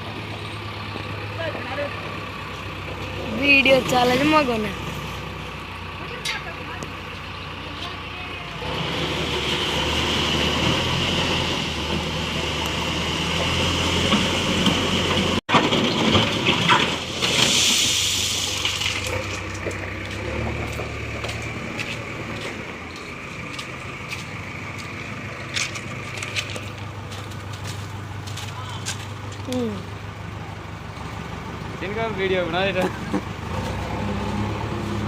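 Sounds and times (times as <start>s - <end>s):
diesel engine running: 0.0s - 35.0s
stones tipped into trailer: 15.5s - 20.3s.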